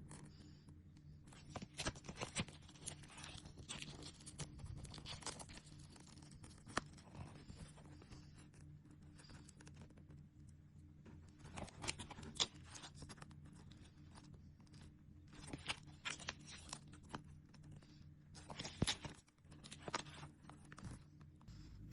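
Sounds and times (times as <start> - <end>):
low steady hum: 0.0 - 21.9
plastic sticker packets crinkling: 1.3 - 8.3, 11.4 - 17.8, 18.4 - 21.0.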